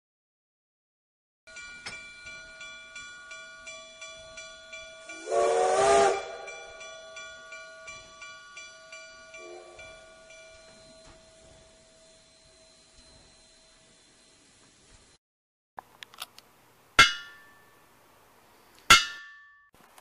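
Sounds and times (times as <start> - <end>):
steam whistle: 5.1 - 6.8
hammer striking anvil: 17.0 - 17.7, 18.9 - 19.7.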